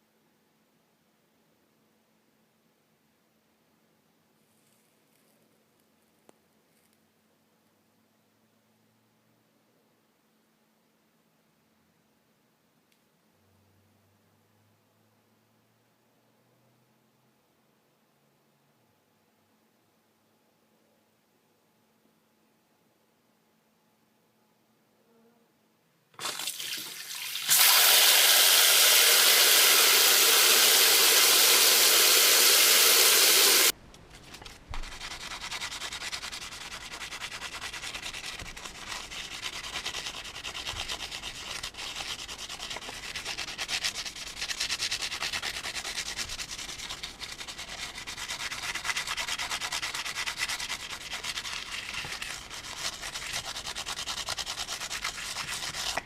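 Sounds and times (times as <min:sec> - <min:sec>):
toothbrush scrubbing plastic: 0:29.4 - 0:56.0.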